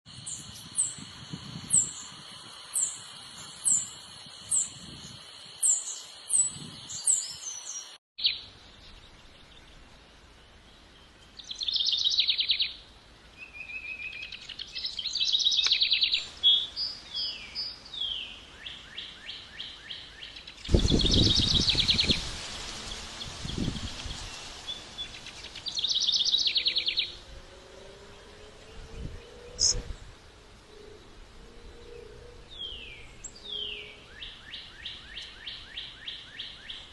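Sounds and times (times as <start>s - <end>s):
high falling bird chirp: 0.2s - 9.8s, 10.5s - 27.2s, 28.4s - 30.1s
rapid trilled bird calls: 29.6s - 29.8s.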